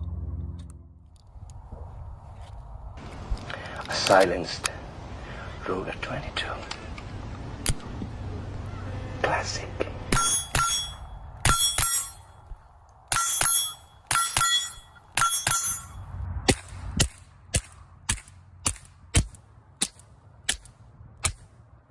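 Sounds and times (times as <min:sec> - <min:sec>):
steel target ringing: 0:10.1 - 0:12.4, 0:13.1 - 0:16.0.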